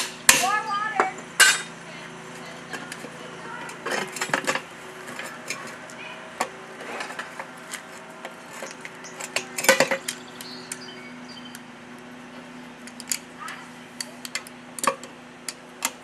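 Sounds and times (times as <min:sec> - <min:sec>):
metal tools clinking and scraping: 0:01.0 - 0:01.7, 0:02.4 - 0:10.9.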